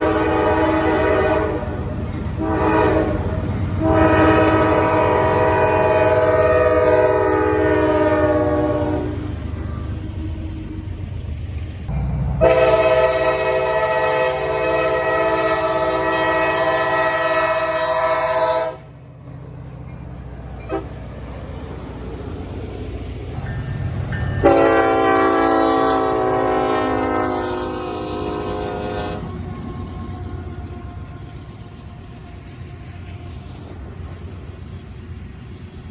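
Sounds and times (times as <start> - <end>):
locomotive air horn blasts: 0.0 - 9.8, 12.4 - 18.9, 20.6 - 21.0, 24.4 - 31.4
low rumble of passing train: 0.0 - 35.9.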